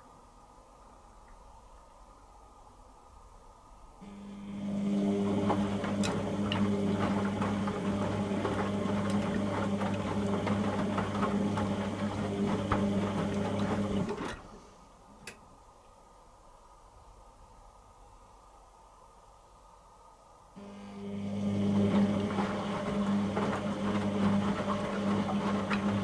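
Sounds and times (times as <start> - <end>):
washing machine motor hum: 4.0 - 15.3, 20.6 - 26.0.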